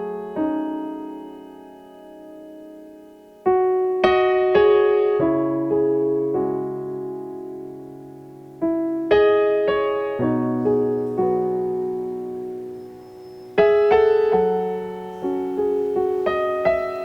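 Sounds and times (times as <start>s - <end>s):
slow piano chords: 0.0s - 17.0s.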